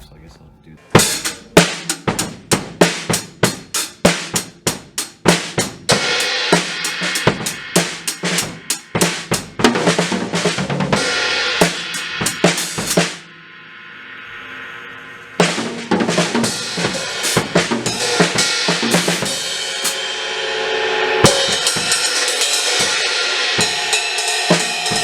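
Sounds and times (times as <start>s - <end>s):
drum kit fills: 0.8s - 13.4s, 15.4s - 25.0s
crash cymbals ringing: 11.0s - 25.0s.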